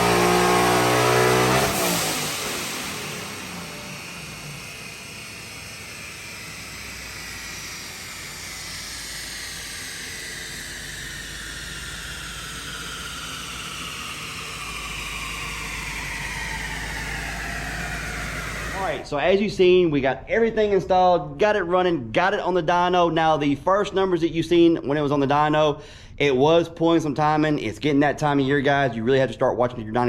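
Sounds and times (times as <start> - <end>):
dyno rollers whining: 0.0 - 21.8.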